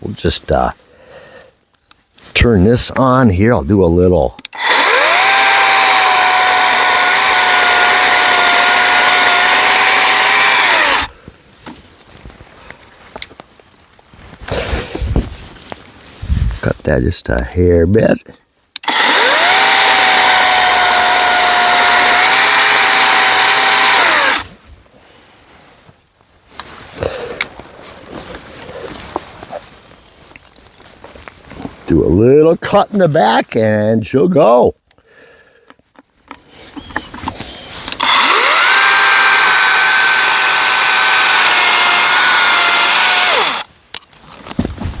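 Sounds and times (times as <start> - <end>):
chainsaw motor whining: 4.4 - 11.1, 18.8 - 24.5, 37.4 - 43.7.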